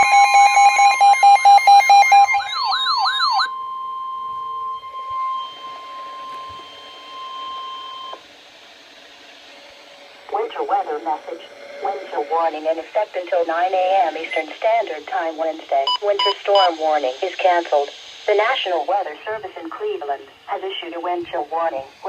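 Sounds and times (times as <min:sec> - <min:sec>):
pulsing warbling alarm: 0:00.0 - 0:08.2, 0:09.7 - 0:22.0
steady warning alert tone: 0:10.2 - 0:21.9
faint radio hiss: 0:10.2 - 0:22.0.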